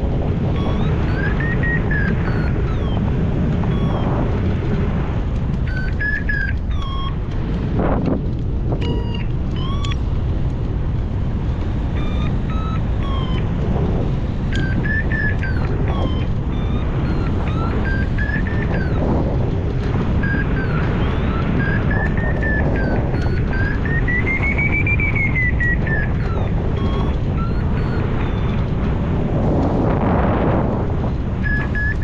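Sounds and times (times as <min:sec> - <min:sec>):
wind rushing over microphone: 0:00.0 - 0:32.0.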